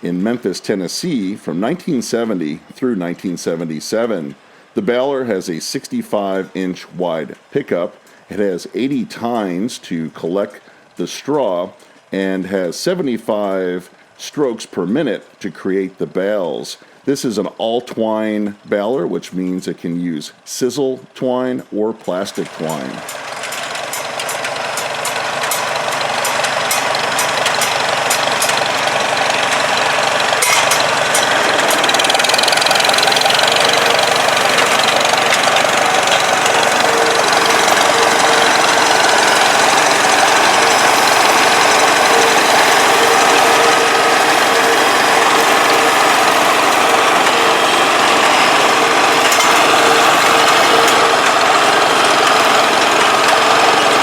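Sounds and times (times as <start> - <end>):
tractor diesel engine under load: 22.0 - 54.0.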